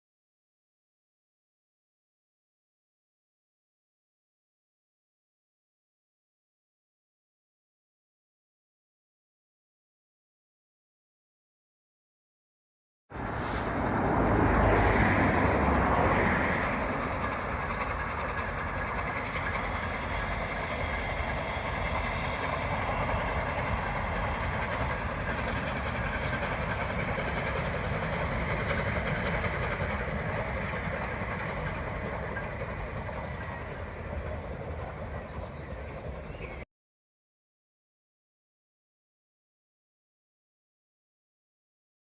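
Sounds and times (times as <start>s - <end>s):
train wheels clattering over rails: 13.2s - 36.6s.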